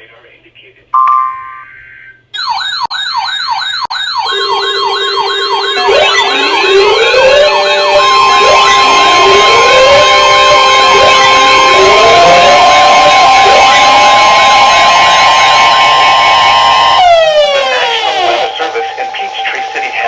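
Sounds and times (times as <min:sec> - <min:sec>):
yelp siren: 0:01.8 - 0:18.6
wailing sirens: 0:02.4 - 0:19.9
steady electronic tone: 0:04.3 - 0:19.6.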